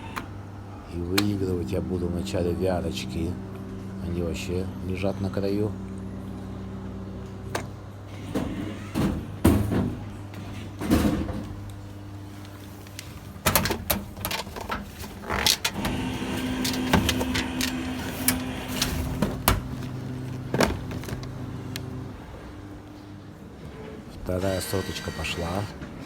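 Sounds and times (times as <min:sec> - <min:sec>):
steady machine hum: 0:00.0 - 0:08.2, 0:09.1 - 0:26.0
prize machine mechanism clunking: 0:12.5 - 0:22.6.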